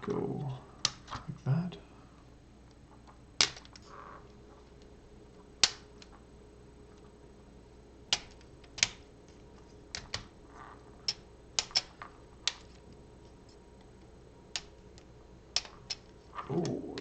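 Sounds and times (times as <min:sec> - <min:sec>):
plastic parts clicking: 0:14.5 - 0:17.0.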